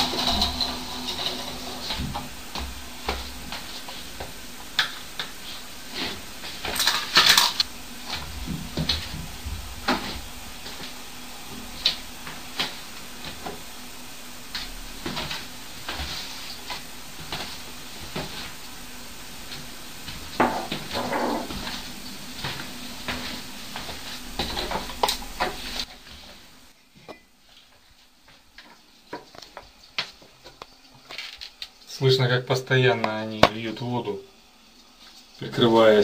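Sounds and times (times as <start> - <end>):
rattling clatter: 0.0 - 2.1
steady low hum: 0.0 - 31.1.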